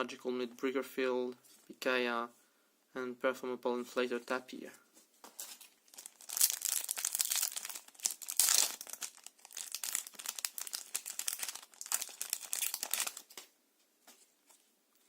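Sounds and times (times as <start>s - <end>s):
foil wrapper tearing and crinkling: 5.4s - 13.4s.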